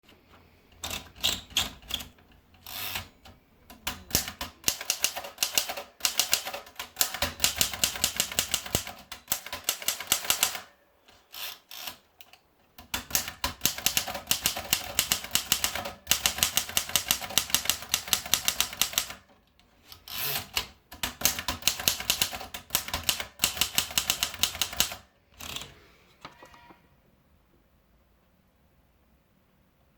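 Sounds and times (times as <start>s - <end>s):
manual typewriter key strikes: 3.7s - 10.7s, 12.8s - 19.2s, 20.4s - 25.0s.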